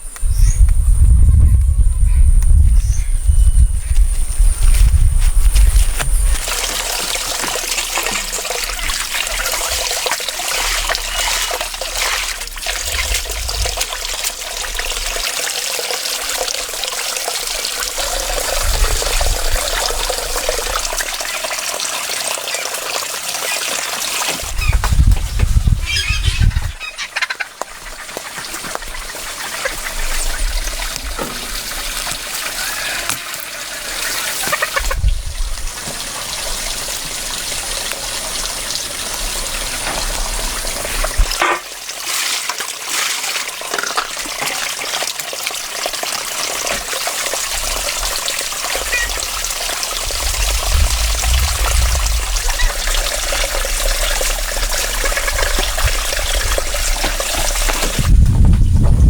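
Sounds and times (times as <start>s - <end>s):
low rumble: 0.0s - 9.8s, 49.1s - 59.0s
water trickling: 4.3s - 26.9s, 27.7s - 59.0s.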